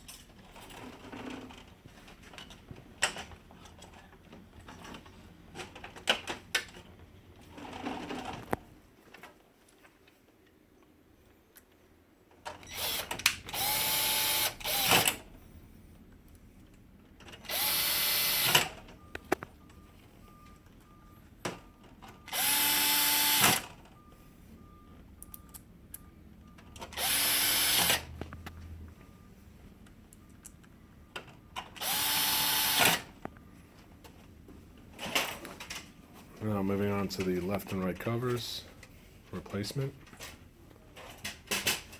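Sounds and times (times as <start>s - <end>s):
electric screwdriver motor whining: 12.7s - 15.2s, 17.5s - 18.7s, 22.3s - 23.6s, 27.0s - 28.1s, 31.8s - 33.1s.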